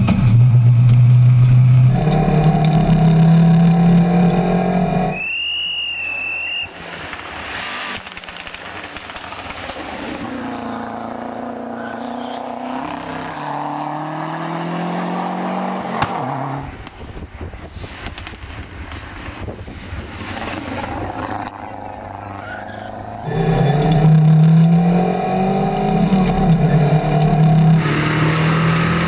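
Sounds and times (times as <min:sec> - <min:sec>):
rally car engine revving: 0:00.0 - 0:05.2, 0:10.3 - 0:16.8, 0:20.3 - 0:29.0.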